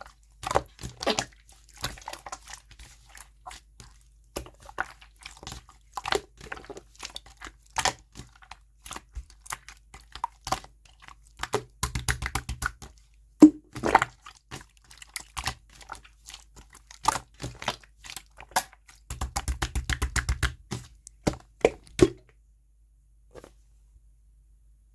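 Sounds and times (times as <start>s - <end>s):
slime clicking and popping: 11.4s - 12.8s, 18.5s - 20.6s.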